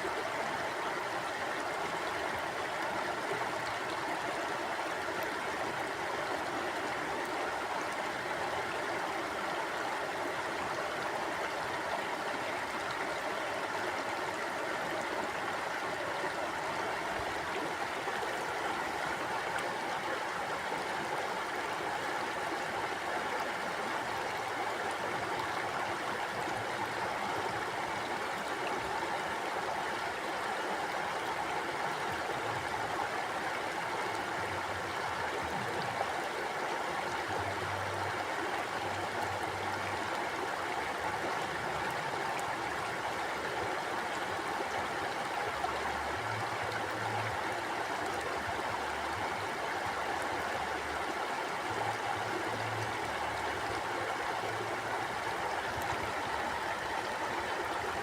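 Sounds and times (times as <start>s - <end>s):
stream flowing over rocks: 0.0s - 58.0s.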